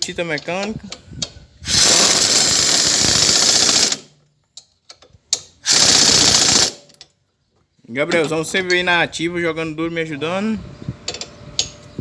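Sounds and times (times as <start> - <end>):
power tool running: 1.7 - 4.0, 5.7 - 6.8.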